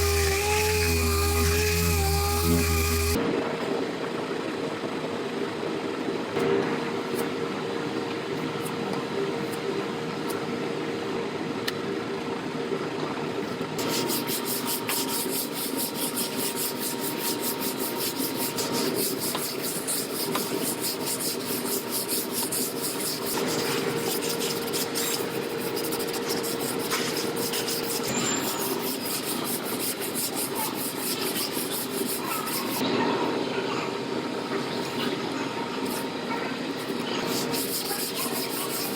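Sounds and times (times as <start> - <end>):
sanding body filler: 0.0 - 3.2, 13.8 - 32.8, 36.8 - 38.9.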